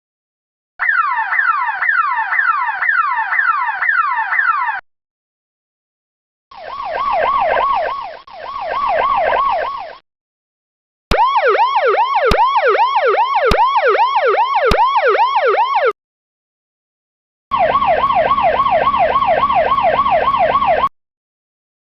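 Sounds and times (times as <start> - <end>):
police siren yelping: 0.8 - 4.8, 6.5 - 10.0, 11.1 - 16.0, 17.5 - 20.9.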